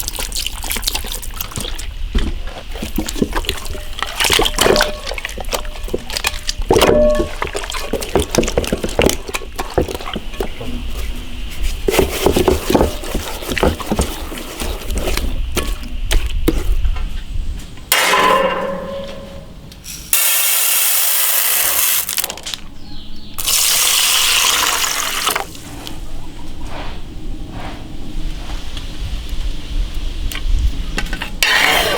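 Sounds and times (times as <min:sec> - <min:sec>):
water splashing and pouring: 0:00.0 - 0:11.0, 0:23.4 - 0:25.7
running water: 0:00.0 - 0:11.1
knocks and clatter: 0:04.4 - 0:10.8.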